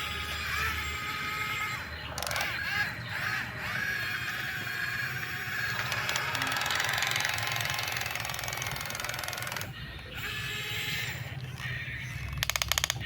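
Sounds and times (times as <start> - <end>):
toy gear motors whirring: 0.0 - 13.0.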